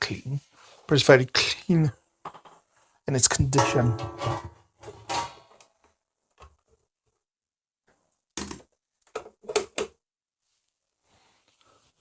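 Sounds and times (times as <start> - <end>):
knocks and clatters of handling: 3.3 - 5.6.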